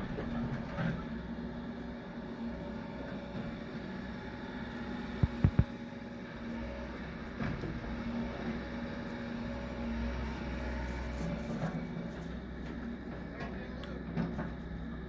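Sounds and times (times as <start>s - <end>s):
engine rumbling: 0.0s - 15.0s.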